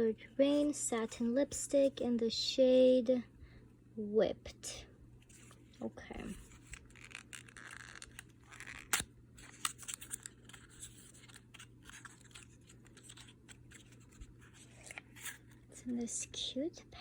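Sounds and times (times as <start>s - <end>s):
packaging clicks and rustles: 6.3s - 15.6s.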